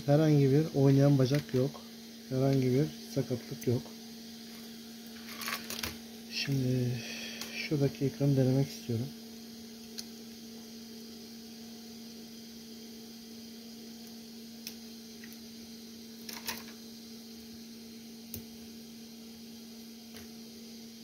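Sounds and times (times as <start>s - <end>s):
low electrical hum: 0.0s - 21.0s.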